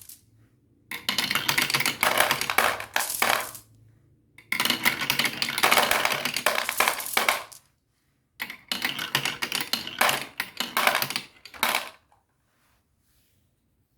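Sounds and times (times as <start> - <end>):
marbles clacking down marble run: 0.9 - 3.6, 4.4 - 7.6, 8.4 - 12.0.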